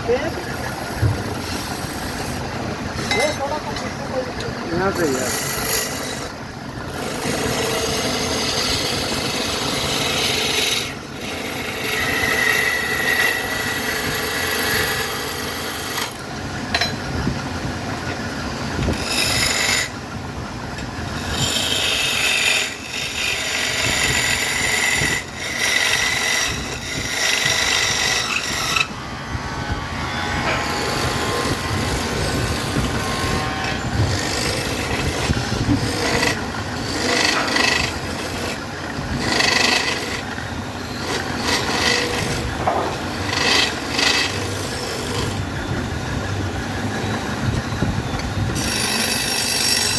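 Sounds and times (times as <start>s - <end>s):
lathe spinning: 0.0s - 49.9s
turning tool scraping wood: 0.3s - 16.2s, 18.8s - 20.0s, 21.1s - 28.9s, 29.6s - 45.8s, 48.5s - 49.9s.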